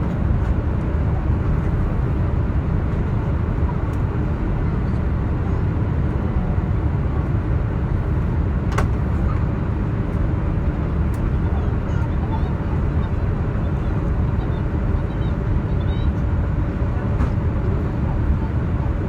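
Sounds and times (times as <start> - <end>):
airliner cabin rumble: 0.0 - 19.0.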